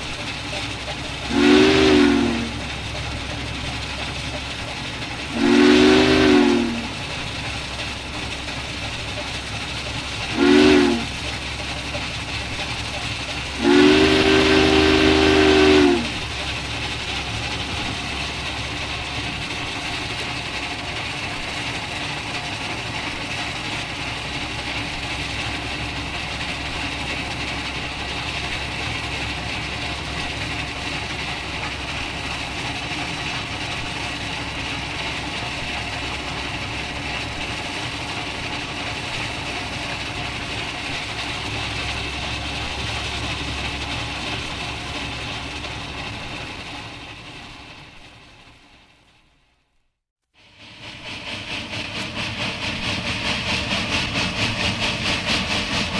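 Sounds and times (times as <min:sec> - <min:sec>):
steam locomotive running: 0:00.0 - 0:55.9
steam whistle: 0:01.3 - 0:02.7, 0:05.3 - 0:07.0, 0:10.3 - 0:11.2, 0:13.6 - 0:16.2.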